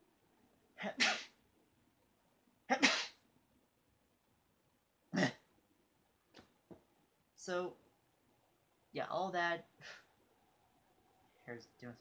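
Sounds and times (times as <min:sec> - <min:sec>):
man imitating sneezes: 0:00.8 - 0:01.4, 0:02.7 - 0:03.2.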